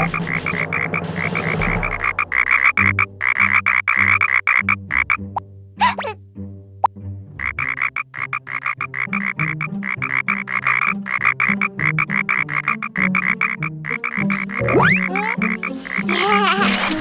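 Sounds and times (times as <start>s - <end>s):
cartoon frog croaks: 3.3s - 6.2s, 7.4s - 17.0s.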